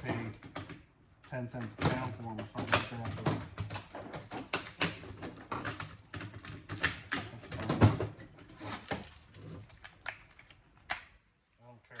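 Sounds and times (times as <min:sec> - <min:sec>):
metal and plastic parts rattling: 0:00.0 - 0:11.0.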